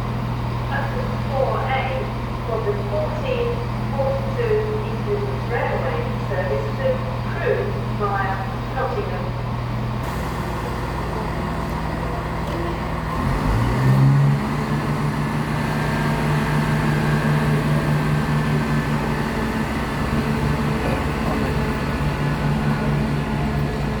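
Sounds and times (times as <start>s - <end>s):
train diesel engine revving: 9.5s - 24.0s.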